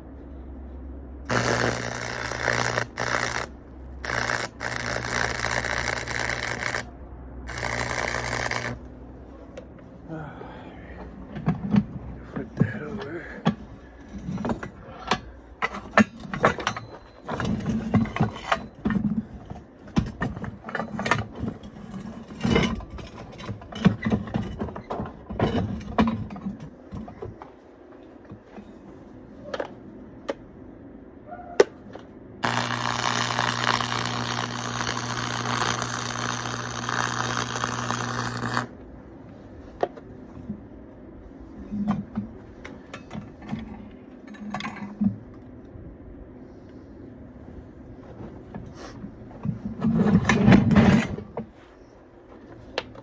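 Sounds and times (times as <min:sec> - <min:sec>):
welding arc crackling hiss: 0:01.3 - 0:06.9, 0:07.5 - 0:08.8, 0:32.4 - 0:38.7
metal pieces clanking: 0:13.4 - 0:19.0.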